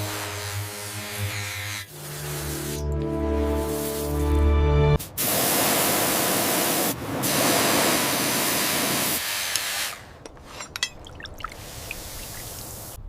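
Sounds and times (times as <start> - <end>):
spray hissing: 1.9 - 2.9, 5.0 - 10.0.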